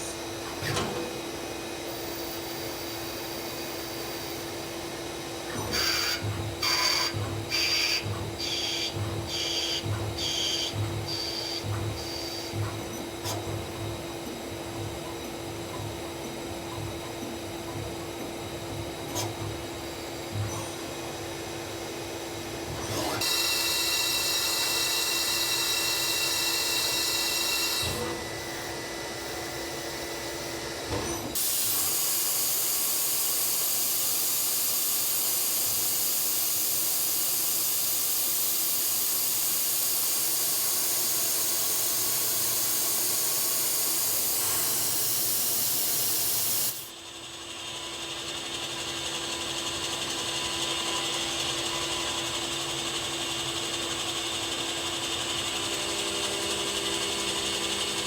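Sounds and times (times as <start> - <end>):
lathe machine hum: 23.3 - 58.0.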